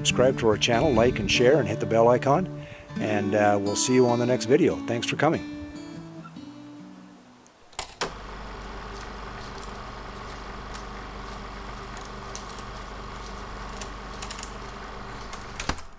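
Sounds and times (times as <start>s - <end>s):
garage door motor humming: 7.5s - 15.9s
garage door opener click: 7.6s - 15.9s.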